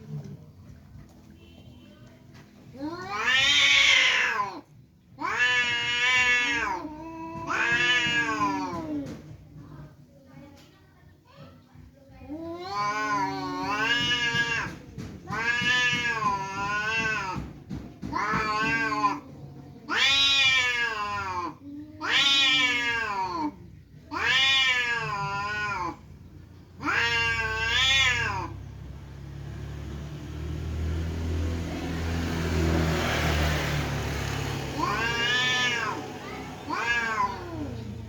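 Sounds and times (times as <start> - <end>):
cats yowling: 2.7 - 9.2, 12.3 - 26.1, 26.8 - 28.8, 33.6 - 38.0.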